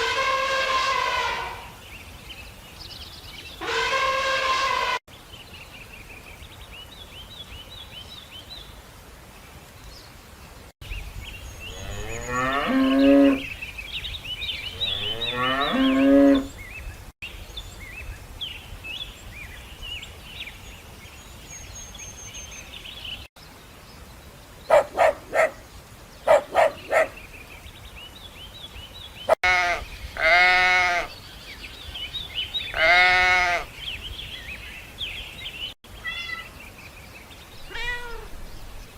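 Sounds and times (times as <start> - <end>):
cattle mooing: 11.7 - 13.4, 14.8 - 16.5.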